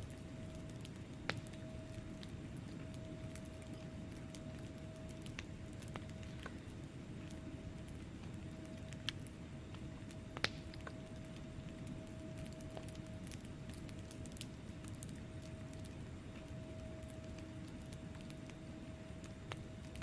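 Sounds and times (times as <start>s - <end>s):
faint steady hum: 0.0s - 20.0s
wood fire crackling: 0.0s - 20.0s.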